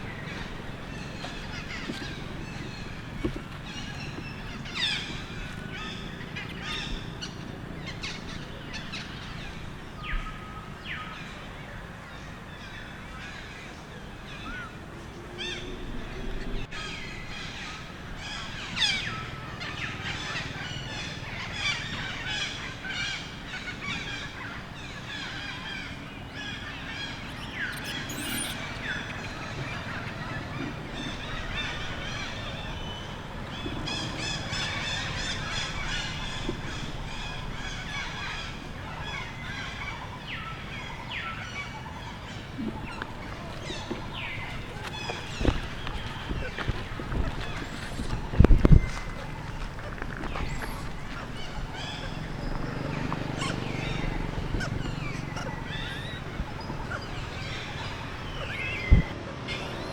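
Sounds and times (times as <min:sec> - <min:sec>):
animal chirps and squeals: 0:26.9 - 0:29.2, 0:47.3 - 0:49.2, 0:53.4 - 0:59.9.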